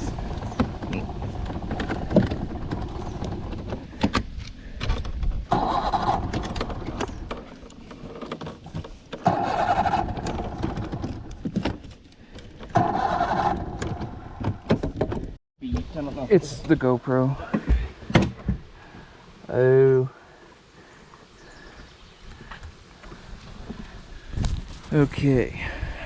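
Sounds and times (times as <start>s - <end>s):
outboard motor electric starter cranking: 4.8s - 15.3s.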